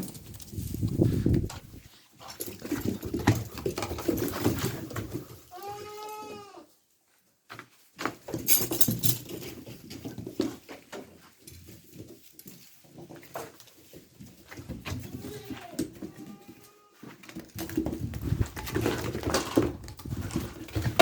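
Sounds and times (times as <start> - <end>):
animals scuffling and rustling: 0.0 - 21.0
goat bleating: 5.5 - 6.7, 15.0 - 17.0.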